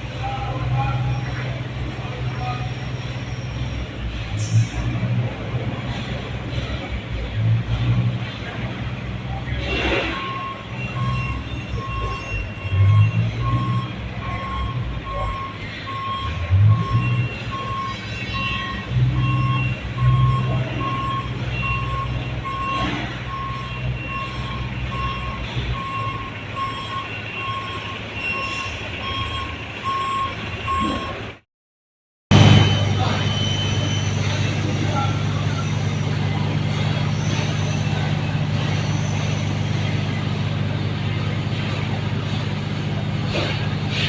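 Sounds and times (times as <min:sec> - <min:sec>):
engine humming and revving: 0:00.0 - 0:31.4, 0:32.3 - 0:44.0
motion alarm beeping: 0:10.0 - 0:31.2, 0:32.3 - 0:40.3.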